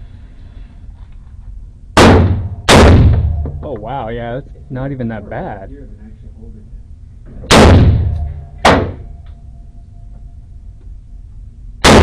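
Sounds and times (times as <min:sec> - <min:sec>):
gunshots with ringing echo: 0:02.0 - 0:03.6, 0:07.5 - 0:09.2.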